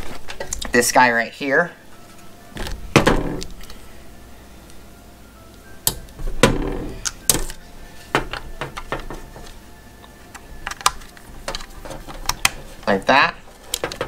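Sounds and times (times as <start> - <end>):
plastic clicks and knocks: 13.7 - 14.0.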